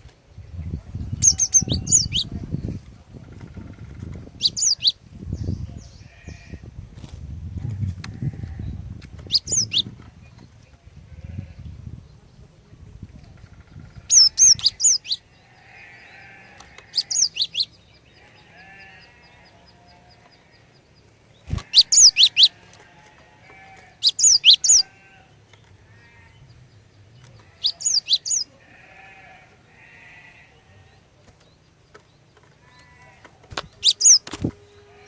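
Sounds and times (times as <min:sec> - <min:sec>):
bird high chirping notes: 0:00.4 - 0:02.7, 0:04.4 - 0:06.6, 0:08.5 - 0:10.4, 0:13.7 - 0:20.9, 0:21.5 - 0:22.6, 0:24.0 - 0:28.9, 0:33.7 - 0:35.0
harsh buzzy bird calls: 0:01.1 - 0:02.4, 0:13.4 - 0:26.6, 0:27.2 - 0:31.7, 0:32.6 - 0:35.0.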